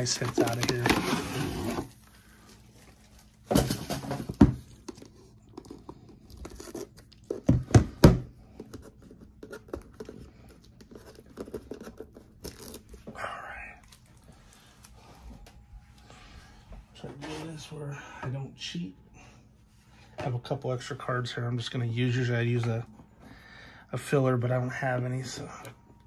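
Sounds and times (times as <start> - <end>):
packaging tearing: 0.0 - 1.9, 10.9 - 12.9
packaging rustling and clicks: 0.0 - 2.0.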